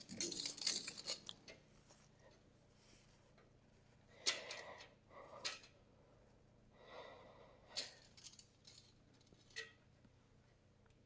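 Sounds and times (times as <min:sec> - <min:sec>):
metal scrapes and clinks: 0:00.0 - 0:01.3.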